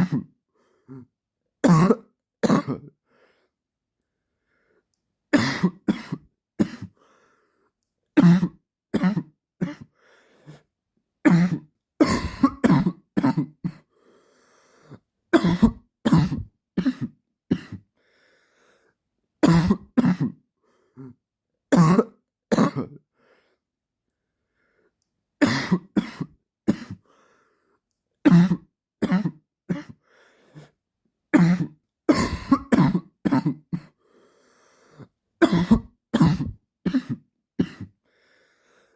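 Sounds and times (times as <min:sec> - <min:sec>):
man coughing: 0:01.6 - 0:02.9, 0:05.4 - 0:06.9, 0:11.3 - 0:13.8, 0:15.4 - 0:17.8, 0:19.4 - 0:20.4, 0:25.4 - 0:27.0, 0:31.4 - 0:34.0, 0:35.4 - 0:38.0.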